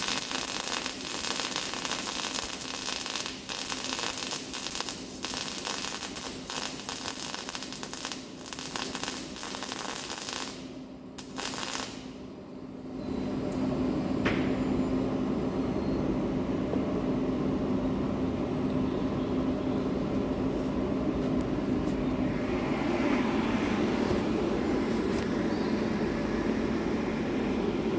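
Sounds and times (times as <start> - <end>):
welding arc crackling: 0.0 - 12.2
low mechanical hum: 0.0 - 27.9.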